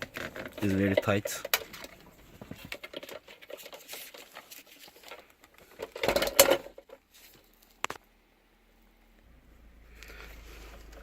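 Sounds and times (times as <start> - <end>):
plastic plugs clicking and rattling: 0.0 - 7.0
plastic clatter: 0.0 - 8.0.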